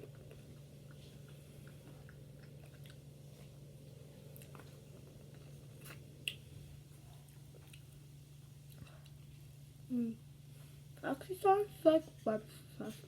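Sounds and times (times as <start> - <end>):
chewing fried chicken: 0.0 - 9.4.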